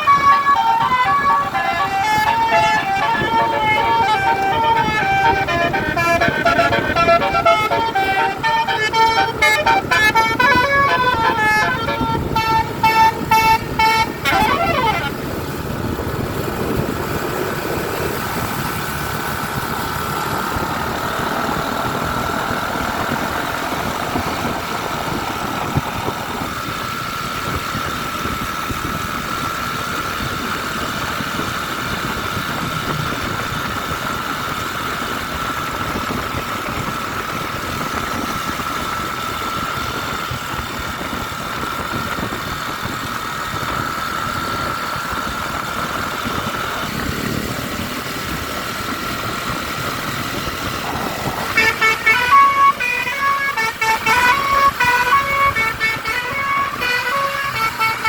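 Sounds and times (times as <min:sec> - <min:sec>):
high whine: 0:00.0 - 0:26.5
vehicle engine running: 0:00.0 - 0:58.0.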